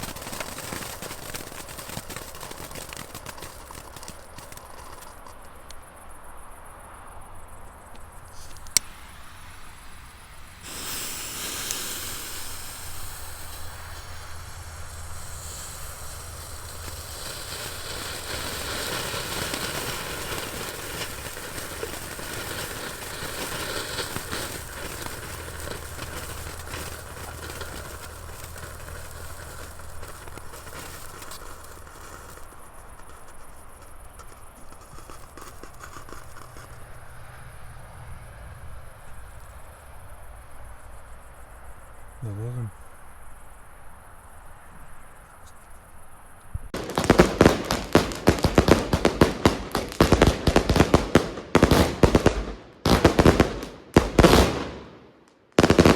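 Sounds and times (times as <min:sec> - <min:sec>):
firework fountain hissing and crackling: 0:00.0 - 0:43.6, 0:46.1 - 0:55.9.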